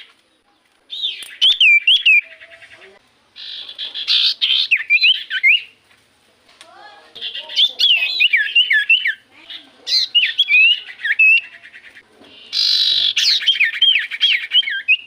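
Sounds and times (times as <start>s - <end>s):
bird singing whistled notes: 0.9s - 2.6s, 3.4s - 5.8s, 7.2s - 9.2s, 9.9s - 15.0s
harsh bird call: 0.9s - 5.8s, 7.2s - 15.0s.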